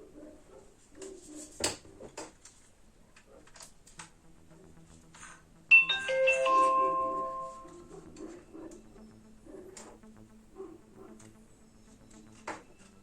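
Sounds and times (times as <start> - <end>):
held keyboard notes: 3.8 - 13.0.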